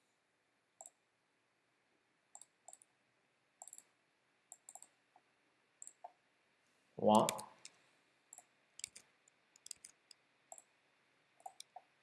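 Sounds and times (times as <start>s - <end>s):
computer mouse clicking: 2.3s - 2.9s, 3.6s - 3.9s, 4.5s - 5.0s, 5.8s - 6.2s, 7.3s - 10.7s, 11.4s - 11.9s.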